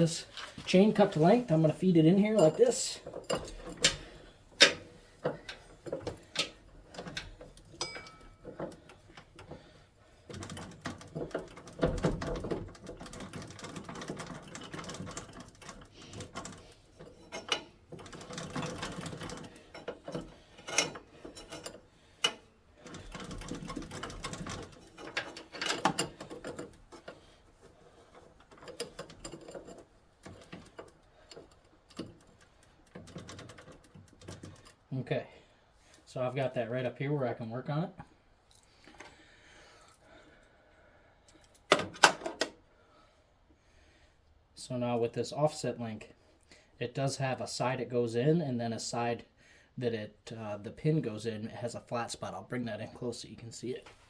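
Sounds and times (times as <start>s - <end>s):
roller chain clicking and rattling: 10.3s - 27.1s.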